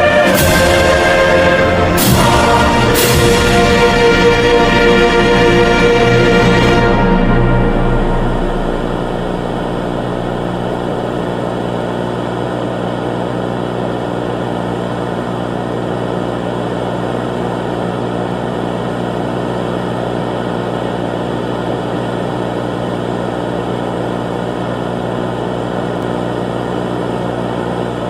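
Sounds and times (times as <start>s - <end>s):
low hum: 0.0s - 14.9s
steady droning noise: 0.0s - 21.8s.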